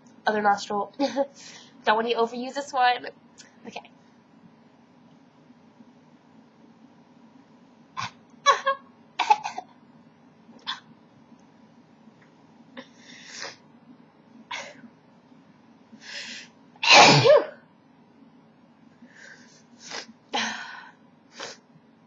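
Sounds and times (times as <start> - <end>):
woman sneezing: 16.8 - 17.6.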